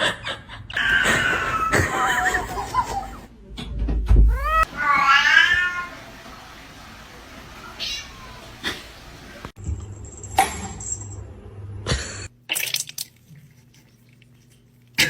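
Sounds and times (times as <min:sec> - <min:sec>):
cat meowing: 0:04.2 - 0:06.0, 0:07.6 - 0:08.5.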